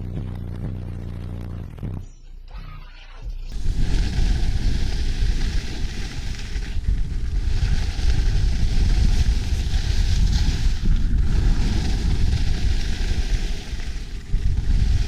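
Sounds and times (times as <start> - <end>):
wind buffeting microphone: 3.5 - 15.0.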